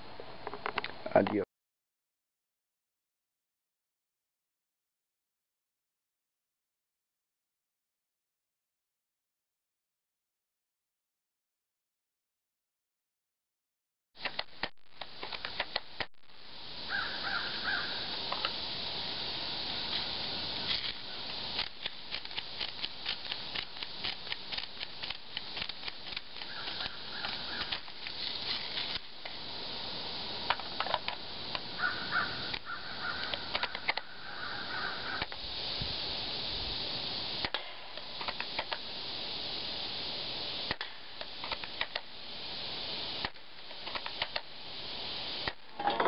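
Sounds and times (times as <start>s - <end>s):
steady hiss: 0.0s - 1.4s, 14.2s - 46.0s
bird calling: 16.8s - 18.2s, 26.4s - 28.8s, 31.7s - 35.3s.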